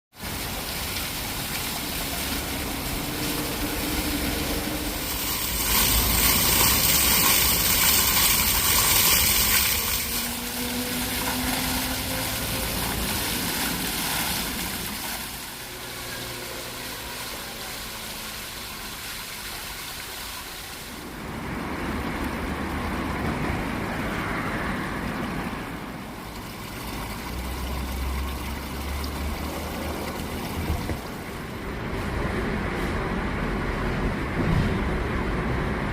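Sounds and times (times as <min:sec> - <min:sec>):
rushing water: 0:00.1 - 0:35.9
vehicle engine hum: 0:00.3 - 0:19.5.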